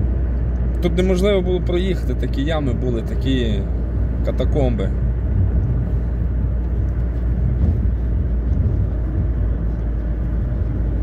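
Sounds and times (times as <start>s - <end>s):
vehicle engine rumbling: 0.0s - 11.0s.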